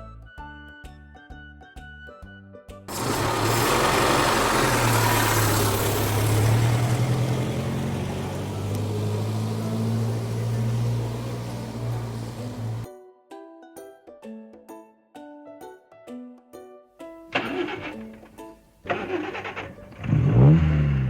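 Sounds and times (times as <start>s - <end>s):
vehicle engine starting and running: 2.9s - 12.9s, 17.4s - 21.0s.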